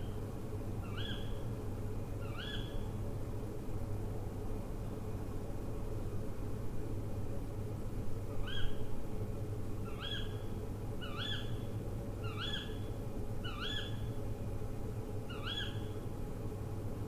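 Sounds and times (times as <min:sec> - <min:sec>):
owl calling: 0:12.2 - 0:12.8, 0:13.4 - 0:14.0, 0:15.3 - 0:15.9.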